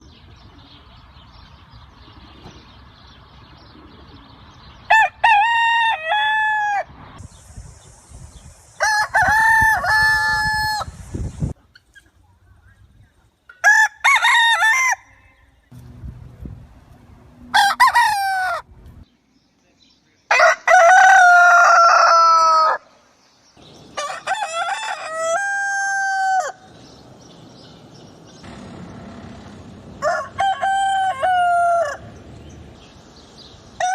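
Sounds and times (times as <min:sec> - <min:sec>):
roosters crowing: 0:04.8 - 0:07.0, 0:08.8 - 0:11.0, 0:13.5 - 0:15.6, 0:17.4 - 0:19.0, 0:20.3 - 0:23.0, 0:23.8 - 0:27.0, 0:28.4 - 0:33.9.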